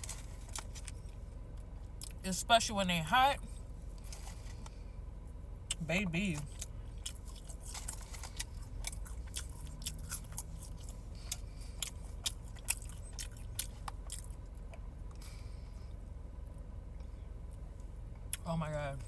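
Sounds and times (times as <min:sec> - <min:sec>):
person chewing crunchy food: 0:00.0 - 0:01.2, 0:06.4 - 0:15.9.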